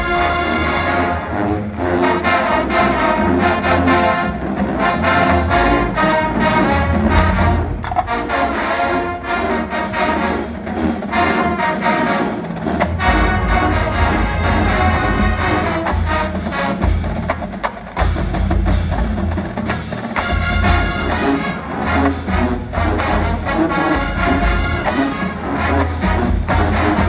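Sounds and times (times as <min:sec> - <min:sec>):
marching band playing: 0:00.0 - 0:27.0.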